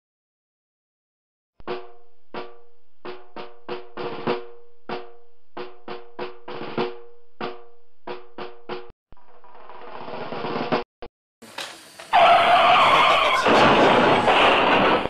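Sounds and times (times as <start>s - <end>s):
drum and snare hits: 1.6s - 8.9s.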